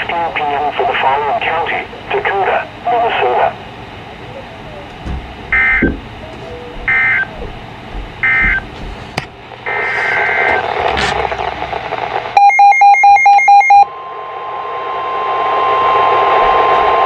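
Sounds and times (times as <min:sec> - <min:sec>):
weather radio static: 0:00.0 - 0:03.6, 0:09.5 - 0:12.4
steady warning tone: 0:03.5 - 0:17.0
rapid electronic alert beeps: 0:05.5 - 0:06.0, 0:06.9 - 0:07.3, 0:08.2 - 0:08.6, 0:12.4 - 0:13.9
radio data burst chirps: 0:09.6 - 0:13.8.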